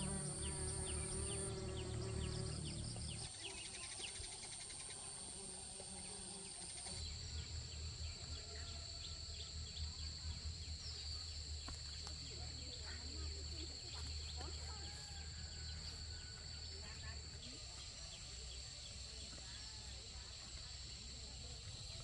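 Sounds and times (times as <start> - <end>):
low rumble: 0.0 - 3.3
insects shrilling: 0.0 - 12.3.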